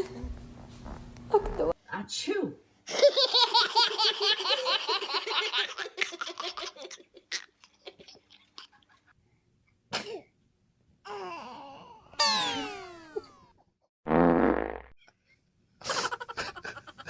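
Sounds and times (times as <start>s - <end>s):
high-pitched laughter: 12.2s - 13.3s.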